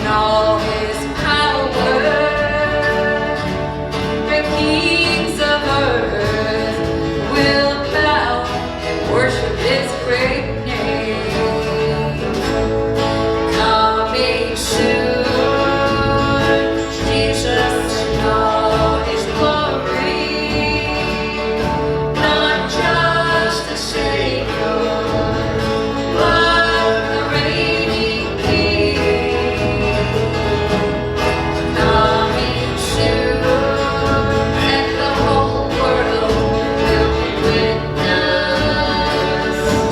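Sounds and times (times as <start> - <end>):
church band country gospel music: 0.0 - 39.9
sliding melody line: 0.0 - 39.9
steady bass: 0.0 - 39.9.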